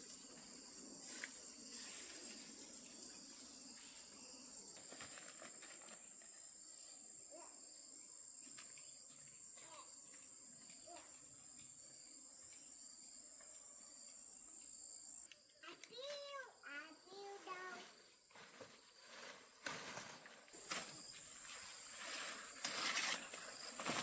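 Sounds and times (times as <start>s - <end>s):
insects trilling: 0.0s - 24.0s
faint chirps and clicks: 8.4s - 16.8s.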